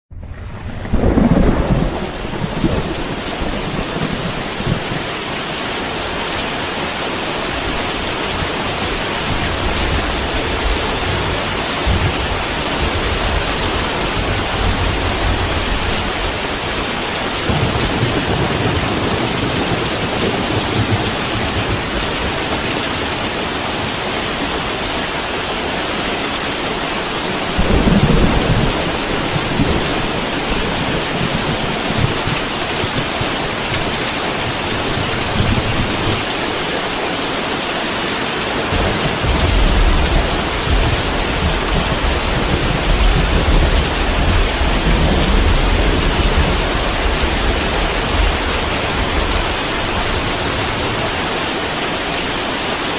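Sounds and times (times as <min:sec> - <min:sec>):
thunder rumbling: 0:00.1 - 0:06.3, 0:07.6 - 0:24.9, 0:27.2 - 0:36.4, 0:38.7 - 0:51.2
heavy rain: 0:00.1 - 0:52.9.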